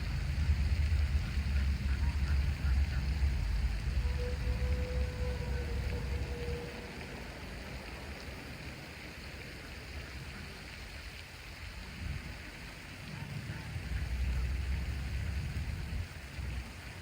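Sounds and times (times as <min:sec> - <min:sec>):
low rumble: 0:00.0 - 0:08.9, 0:13.8 - 0:16.8
outdoor rushing hiss: 0:00.0 - 0:10.5.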